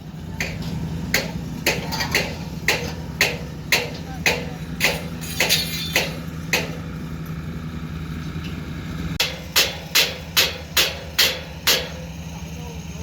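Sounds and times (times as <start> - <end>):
bulldozer engine running: 0.0 - 13.0
sharp knocks: 0.4 - 6.8, 9.2 - 12.0.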